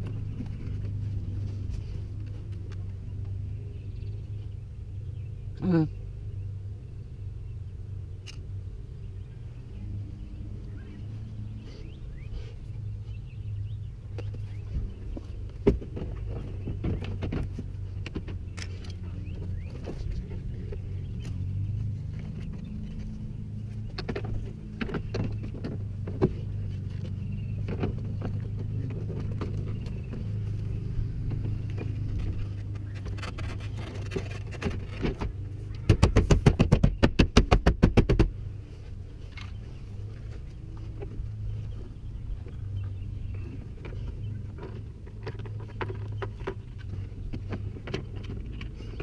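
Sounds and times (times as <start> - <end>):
car door panel parts knocking: 35.2 - 38.3.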